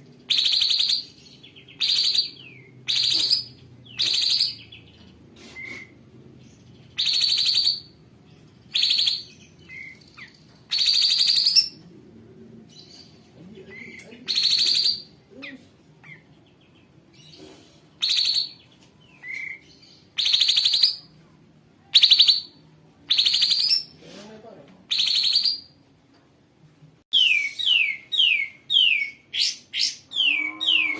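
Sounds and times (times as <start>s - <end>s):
songbird harsh rasping calls: 1.8s - 4.8s.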